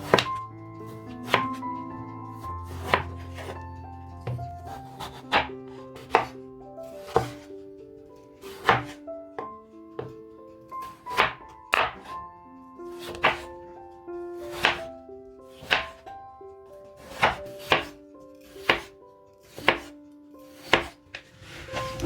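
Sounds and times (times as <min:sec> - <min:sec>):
knife chopping on cutting board: 0:00.0 - 0:00.4, 0:01.2 - 0:01.6, 0:02.4 - 0:03.6, 0:04.2 - 0:06.4, 0:07.0 - 0:07.5, 0:08.5 - 0:09.0, 0:10.8 - 0:12.2, 0:13.0 - 0:13.5, 0:14.4 - 0:14.9, 0:15.5 - 0:16.0, 0:17.0 - 0:18.9, 0:19.5 - 0:19.9, 0:20.5 - 0:21.2
background music: 0:00.0 - 0:22.0.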